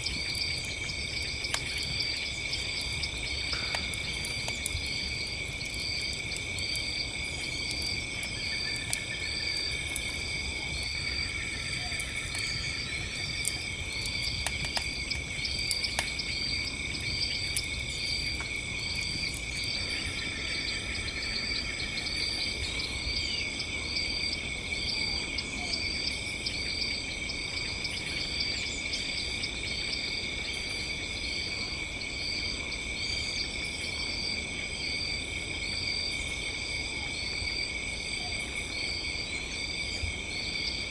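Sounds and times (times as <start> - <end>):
campfire crackling and popping: 0.0 - 22.6
crickets trilling: 0.0 - 40.9
insect chirping rhythmically: 0.0 - 40.9.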